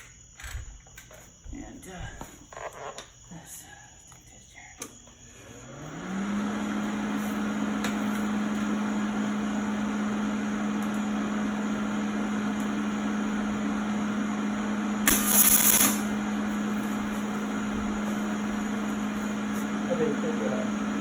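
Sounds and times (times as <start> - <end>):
angle grinder running: 5.4 - 21.0.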